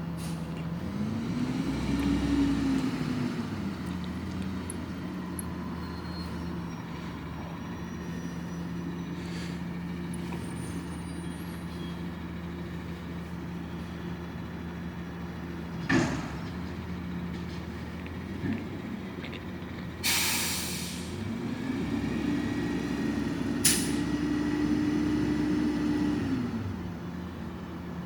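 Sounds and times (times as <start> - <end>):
diesel engine idling: 0.0 - 28.0
loud air hiss: 20.0 - 21.1.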